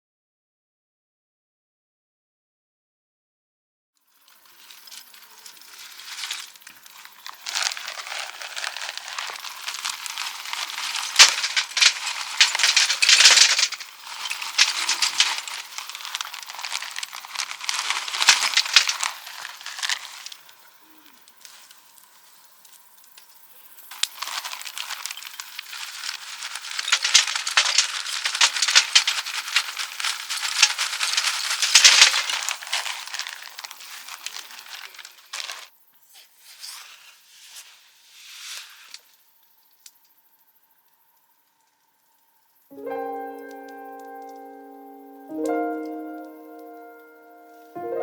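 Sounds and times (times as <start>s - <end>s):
crinkling and rattling handling noise: 4.3s - 35.7s, 42.8s - 47.8s.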